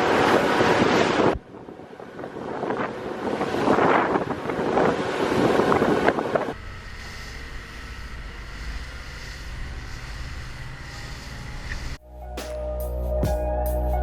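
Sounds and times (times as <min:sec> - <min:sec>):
wind buffeting microphone: 0:00.0 - 0:06.6
steady hiss: 0:06.8 - 0:12.0
electronic background music: 0:12.0 - 0:14.0.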